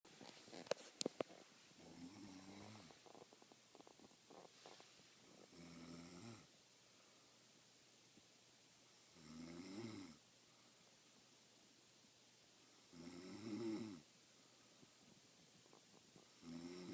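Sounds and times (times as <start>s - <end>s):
woman snoring faintly: 1.8s - 6.5s, 12.8s - 14.0s, 16.3s - 16.9s.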